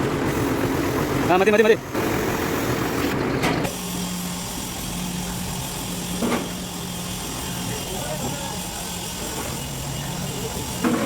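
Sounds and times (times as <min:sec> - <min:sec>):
diesel engine idling: 0:00.0 - 0:03.8.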